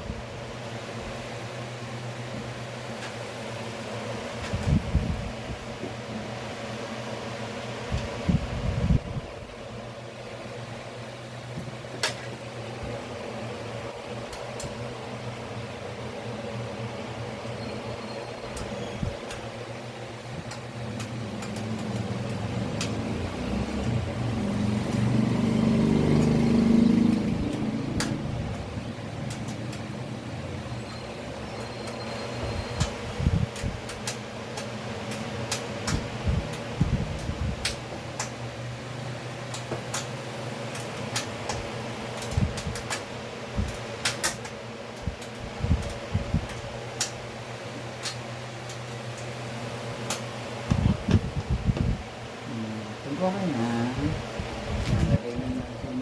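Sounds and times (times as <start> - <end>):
electric fan hum: 0.0 - 56.0
vehicle engine passing by: 21.2 - 29.2.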